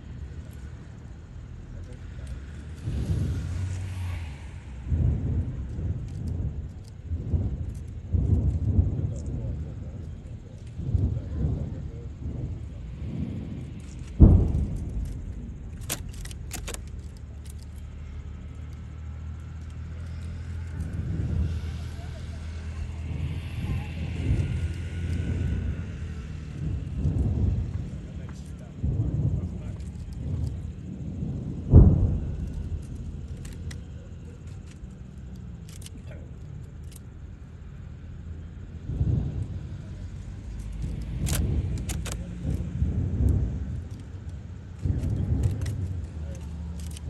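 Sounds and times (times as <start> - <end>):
low rumble: 0.0 - 47.0
firework crackling pops: 1.7 - 37.1, 38.8 - 47.0
firework shell boom: 10.8 - 18.3, 28.9 - 34.0
firework shell burst: 14.0 - 18.6.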